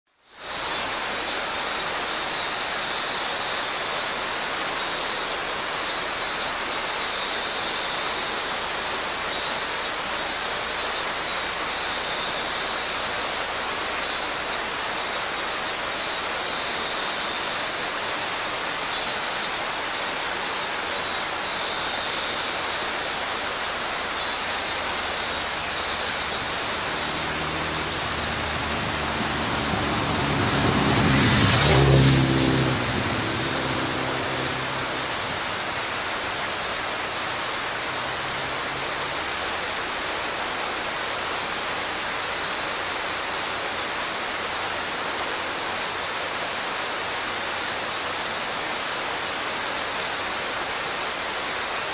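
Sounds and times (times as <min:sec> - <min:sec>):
cicada calling in pulsing phrases: 0:00.2 - 0:51.9
stream rushing: 0:00.2 - 0:51.9
motorbike engine approaching: 0:26.6 - 0:36.0.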